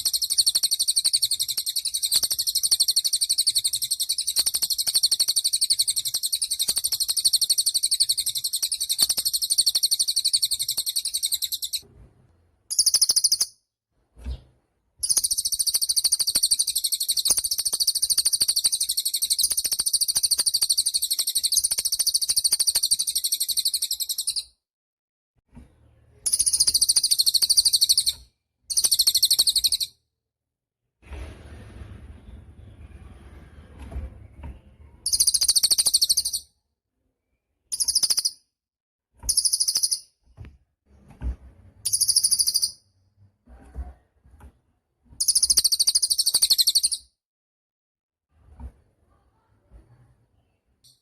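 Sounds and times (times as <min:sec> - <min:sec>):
bird twittering trill: 0:00.0 - 0:11.8, 0:12.7 - 0:13.5, 0:15.0 - 0:24.5, 0:26.3 - 0:29.9, 0:35.0 - 0:36.5, 0:37.7 - 0:38.4, 0:39.3 - 0:40.1, 0:41.8 - 0:42.8, 0:45.2 - 0:47.1.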